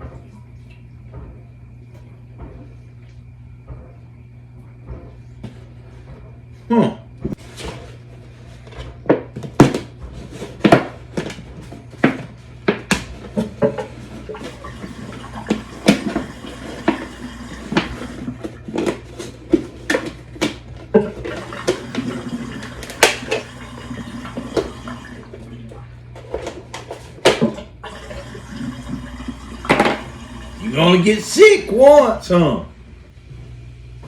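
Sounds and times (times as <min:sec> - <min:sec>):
liquid sloshing: 0:13.8 - 0:19.8, 0:20.9 - 0:26.0, 0:27.8 - 0:31.2.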